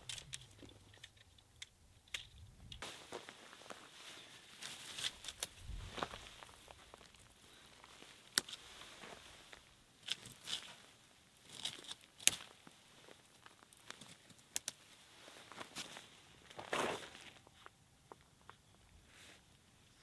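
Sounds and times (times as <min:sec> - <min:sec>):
crinkling rustles: 0:00.0 - 0:18.6.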